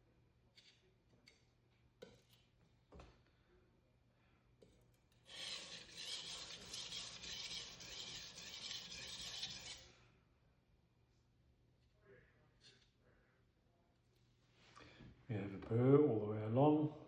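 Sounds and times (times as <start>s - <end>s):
knife grinding on whetstone: 5.3s - 9.9s.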